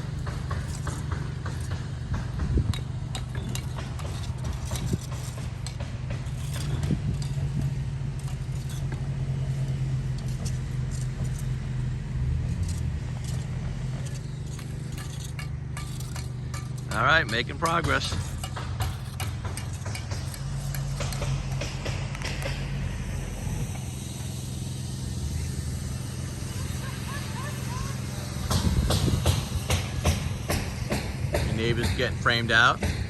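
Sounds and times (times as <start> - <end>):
engine running steadily: 0.0 - 33.0
loud knocks: 28.4 - 33.0.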